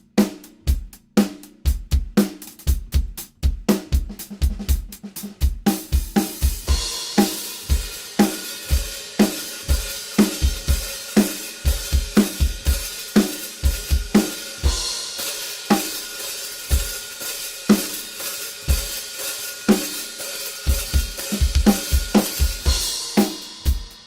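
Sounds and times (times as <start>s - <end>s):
kick and snare drum hits: 20.7s - 23.9s.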